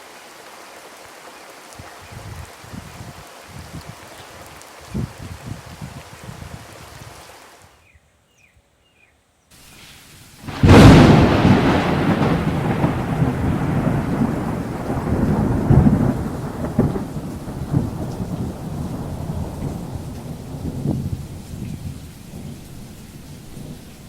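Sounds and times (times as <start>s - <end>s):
rain falling: 0.0s - 7.8s, 9.6s - 24.0s
thunderclap with rumble: 10.4s - 24.0s.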